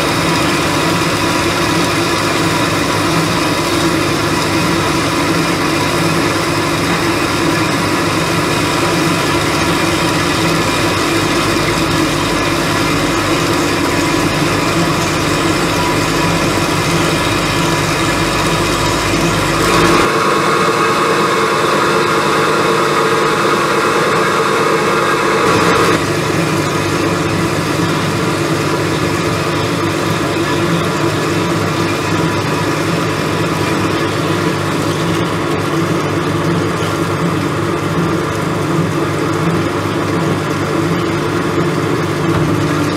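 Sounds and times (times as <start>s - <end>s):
bandsaw humming: 0.0s - 29.8s
higher mechanical tone: 0.0s - 32.5s.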